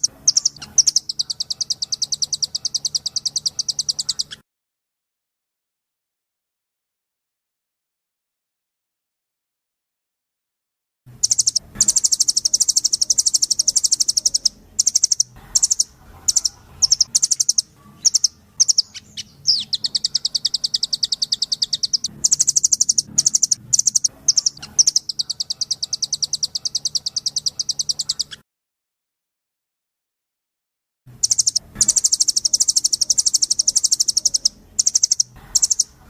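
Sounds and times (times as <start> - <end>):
bird singing chattering trills: 0.0 - 4.4, 11.2 - 28.4, 31.2 - 36.0.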